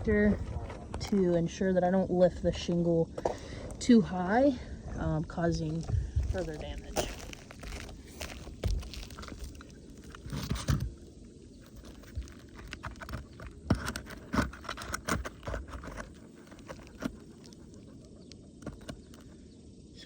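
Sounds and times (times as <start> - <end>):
roof shingle scraping and crunching: 5.5 - 19.4.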